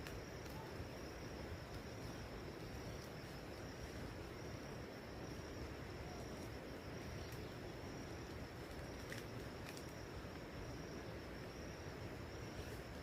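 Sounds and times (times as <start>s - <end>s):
constant hiss: 0.0s - 13.0s
high-pitched insect trill: 0.0s - 13.0s.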